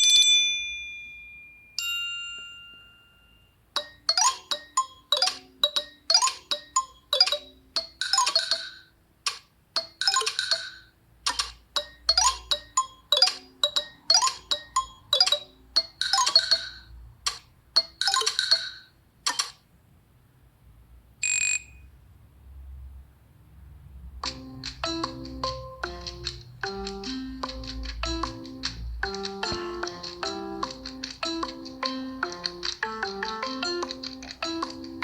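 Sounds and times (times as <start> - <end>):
phone ringtone melody: 2.5 - 8.9, 11.8 - 17.0, 24.2 - 35.0.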